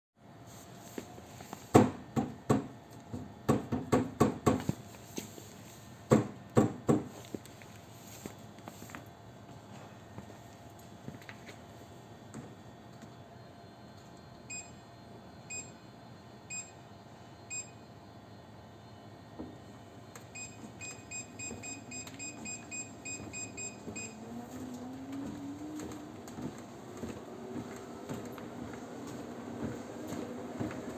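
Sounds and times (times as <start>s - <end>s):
treadmill knocks and thuds: 1.7s - 4.8s, 6.1s - 7.2s, 20.4s - 24.2s, 25.0s - 30.9s
treadmill motor hum rising: 7.1s - 30.9s.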